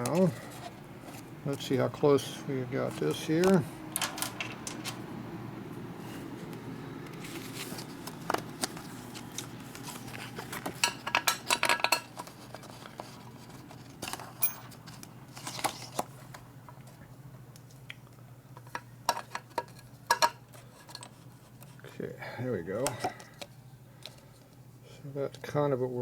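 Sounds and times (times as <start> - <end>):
metal parts and tools clinking: 14.1 - 14.8.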